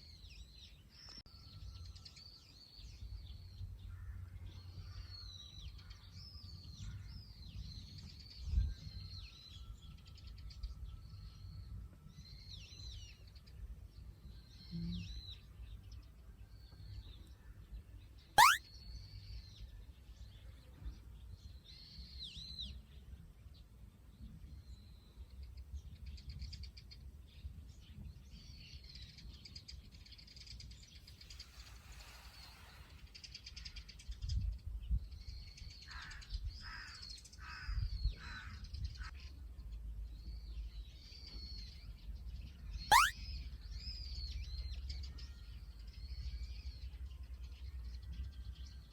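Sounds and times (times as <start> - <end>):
small birds chirping: 18.4 - 18.6, 42.9 - 43.1
upward-sweeping whistle: 18.4 - 18.6, 42.9 - 43.1.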